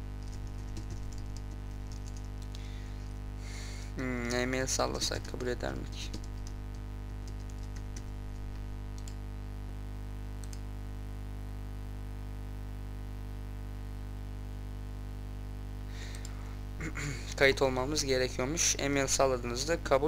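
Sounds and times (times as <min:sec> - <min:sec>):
low electrical hum: 0:00.0 - 0:20.0
computer keyboard keys clicking: 0:00.2 - 0:02.5, 0:07.2 - 0:09.2.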